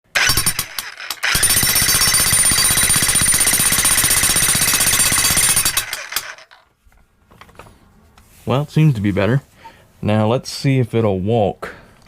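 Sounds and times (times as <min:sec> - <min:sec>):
electric jackhammer hammering: 0:00.1 - 0:06.6.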